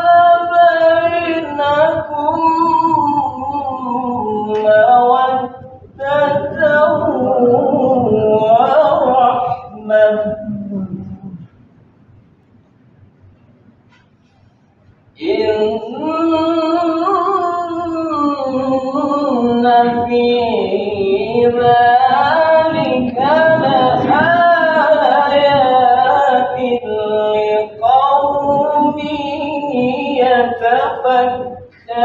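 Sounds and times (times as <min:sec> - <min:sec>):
man reciting melodically: 0:00.0 - 0:11.5, 0:15.2 - 0:32.0.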